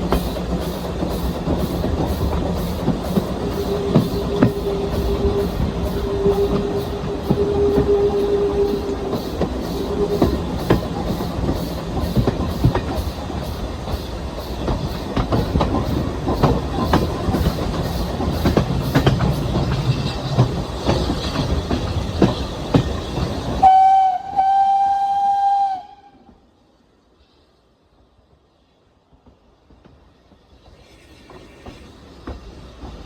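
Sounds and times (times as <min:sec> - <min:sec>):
wheels clanking on rails: 0:00.0 - 0:23.7
steam locomotive running: 0:00.0 - 0:33.0
steam whistle: 0:03.4 - 0:10.8, 0:23.6 - 0:26.3.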